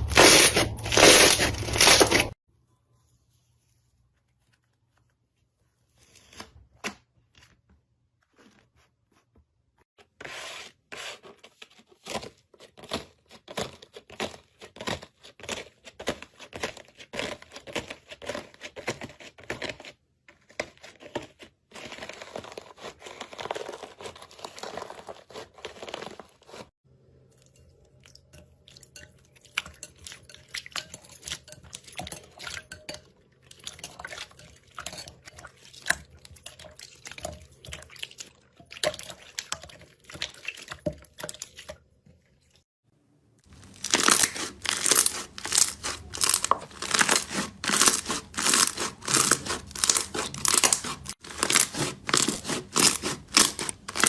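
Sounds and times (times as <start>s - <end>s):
slime crackling and popping: 43.5s - 54.0s.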